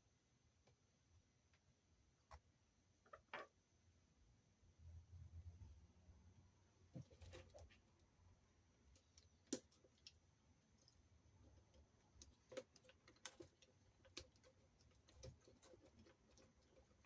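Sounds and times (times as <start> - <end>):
small parts and tool clicking: 8.8 - 17.0.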